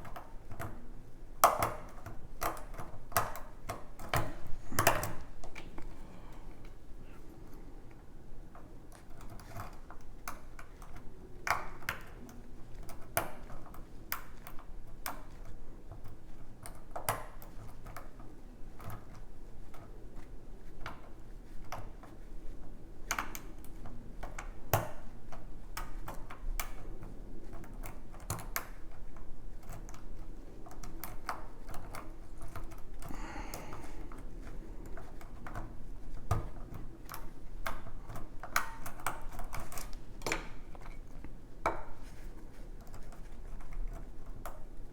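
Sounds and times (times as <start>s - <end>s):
lock pick clicking and scraping: 33.8s - 42.0s.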